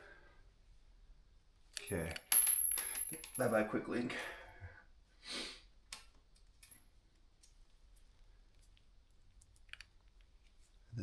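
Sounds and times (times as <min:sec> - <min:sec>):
person sniffing: 0:05.2 - 0:05.7.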